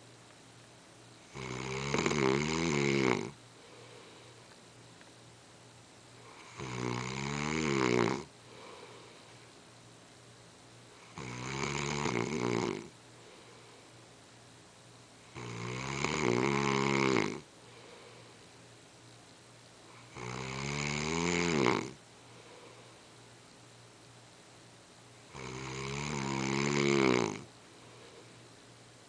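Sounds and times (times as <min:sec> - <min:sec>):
man snoring: 0:01.3 - 0:03.4, 0:06.2 - 0:09.0, 0:11.0 - 0:13.0, 0:15.3 - 0:17.5, 0:19.9 - 0:22.0, 0:25.3 - 0:27.5
faint breathing: 0:03.4 - 0:04.6, 0:08.3 - 0:09.6, 0:12.9 - 0:14.1, 0:17.4 - 0:18.7, 0:22.0 - 0:23.3, 0:27.4 - 0:28.7.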